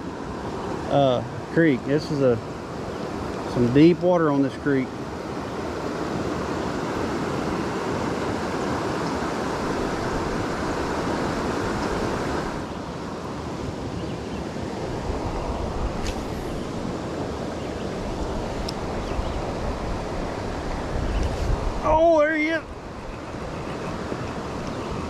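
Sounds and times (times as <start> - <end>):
creek water rushing: 0.0 - 25.0
wind rumble on microphone: 5.0 - 25.0.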